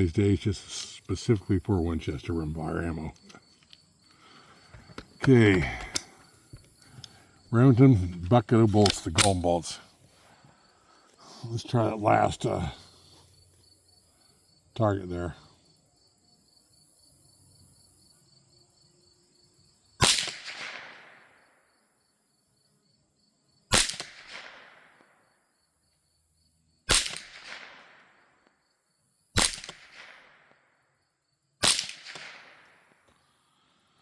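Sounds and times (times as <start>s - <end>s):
rifle shots with echo: 20.0s - 21.4s, 23.7s - 25.1s, 26.9s - 28.3s, 29.4s - 30.6s, 31.6s - 33.0s.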